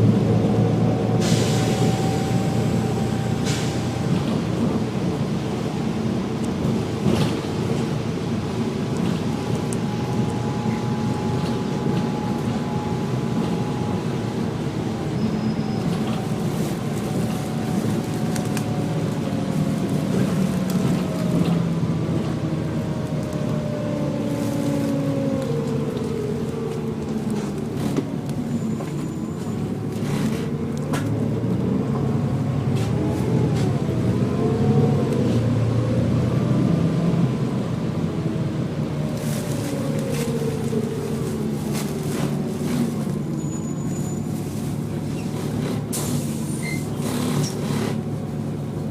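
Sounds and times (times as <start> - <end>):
bus engine and road noise: 0.0 - 48.9
bus whine changing pitch: 0.1 - 5.9, 8.4 - 30.7.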